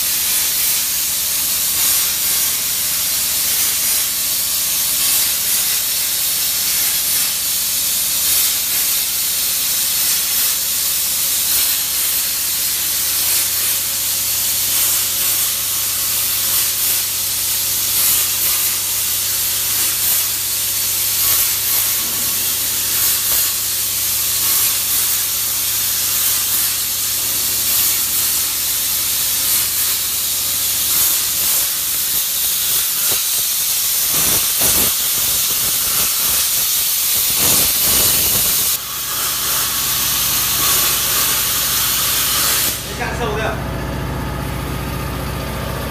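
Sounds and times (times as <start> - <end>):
plasma cutter torch hissing: 0.0 - 43.6.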